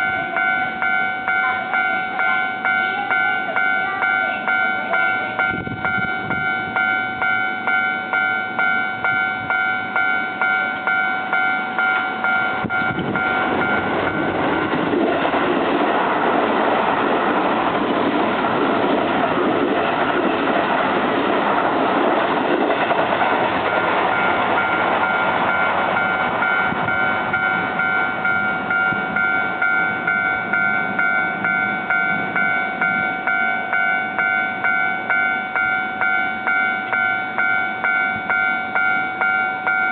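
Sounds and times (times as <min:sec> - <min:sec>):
level crossing bell ringing: 0:00.0 - 0:14.4, 0:24.1 - 0:39.9
electric train passing at speed: 0:00.0 - 0:39.9.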